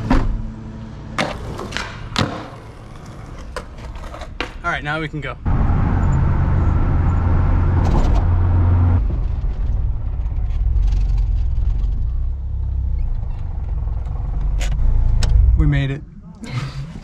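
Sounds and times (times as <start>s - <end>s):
car engine and road noise: 5.4s - 16.2s.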